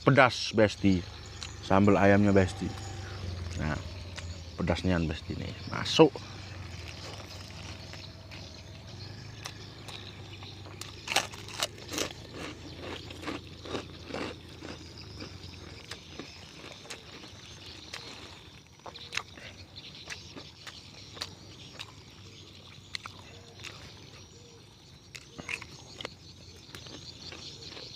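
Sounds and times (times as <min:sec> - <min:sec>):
low steady rumble: 0:00.3 - 0:15.8
person chewing chicken: 0:09.3 - 0:24.3, 0:25.1 - 0:27.9.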